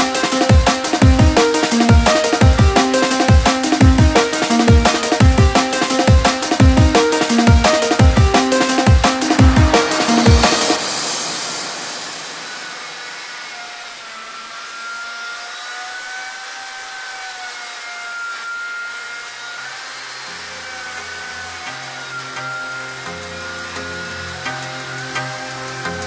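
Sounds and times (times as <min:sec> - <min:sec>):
music with bass line: 0:00.0 - 0:11.5.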